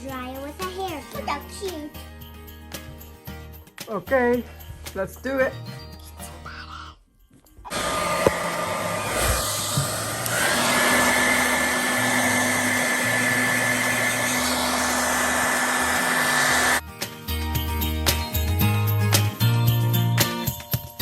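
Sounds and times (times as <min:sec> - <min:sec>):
hair dryer blowing: 0:07.7 - 0:16.8
steady whine: 0:07.7 - 0:16.8.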